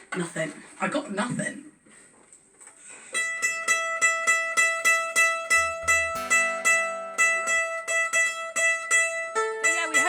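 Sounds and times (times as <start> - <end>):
mandolin picking single note: 3.2 - 10.0
mandolin strummed chord: 3.2 - 10.0.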